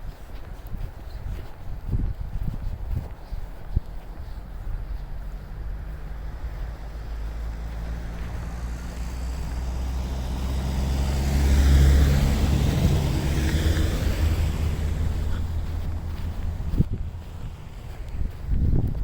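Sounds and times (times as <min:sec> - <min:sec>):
vehicle passing by: 0:04.2 - 0:19.0.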